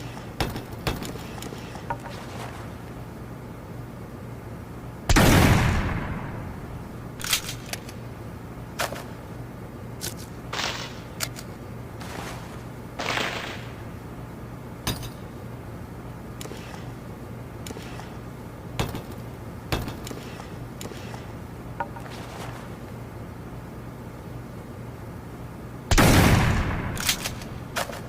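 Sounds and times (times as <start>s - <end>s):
musket shot: 5.1s - 7.7s, 13.0s - 13.8s, 25.9s - 28.0s.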